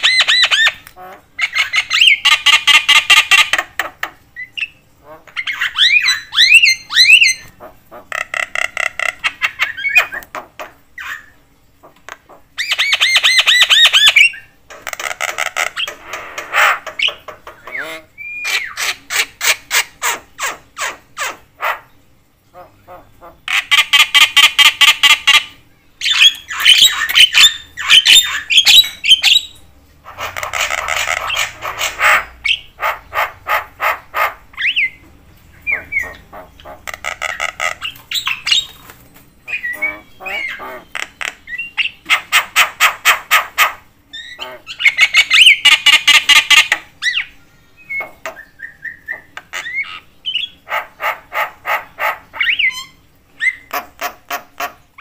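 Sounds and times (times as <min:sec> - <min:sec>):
bird harsh chattering calls: 0:22.6 - 0:35.0, 0:35.6 - 0:38.9, 0:39.5 - 0:54.8.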